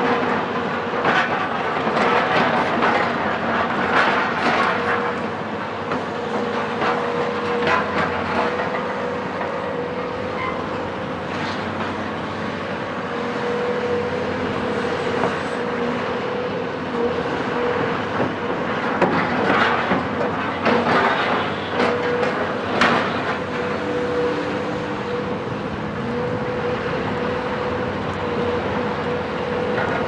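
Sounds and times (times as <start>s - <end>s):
excavator diesel engine whining: 0.0s - 30.0s
knocks and clanks: 18.2s - 23.4s.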